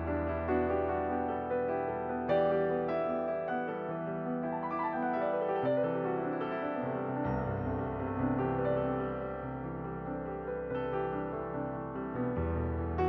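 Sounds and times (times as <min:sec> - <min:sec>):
gentle piano music: 0:00.0 - 0:13.0.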